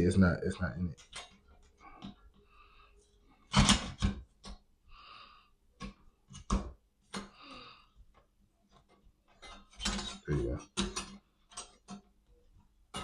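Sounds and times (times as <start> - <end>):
rifle parts clicking and knocking: 8.1 - 13.0.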